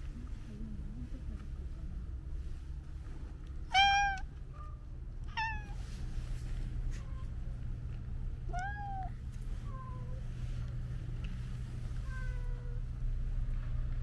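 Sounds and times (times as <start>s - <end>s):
steady low rumble: 0.0s - 14.0s
cat meowing: 3.7s - 4.3s, 5.3s - 5.8s, 8.5s - 9.2s.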